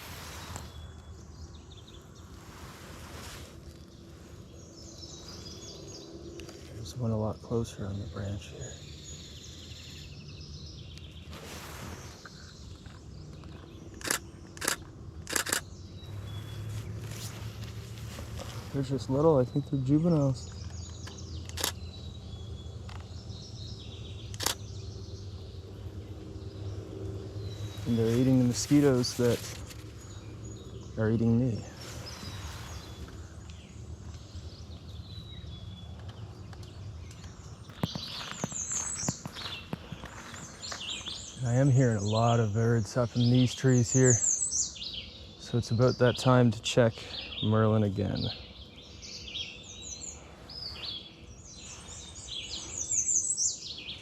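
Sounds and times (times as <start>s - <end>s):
low forest background hum: 0.0s - 54.0s
songbird calls and chirps: 0.0s - 54.0s
sharp clicks: 13.4s - 15.7s, 20.5s - 21.8s, 24.3s - 24.7s
camera shutter clicks: 14.0s - 15.7s.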